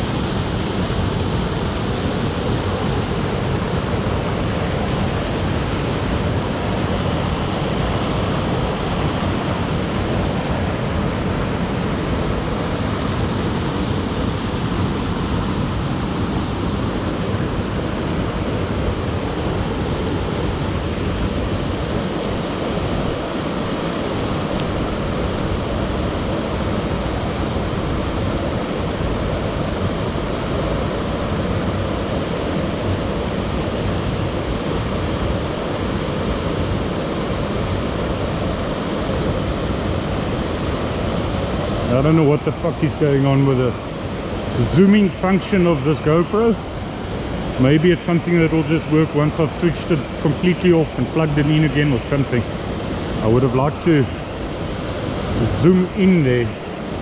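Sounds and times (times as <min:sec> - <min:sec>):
waterfall roaring: 0:00.0 - 0:57.0.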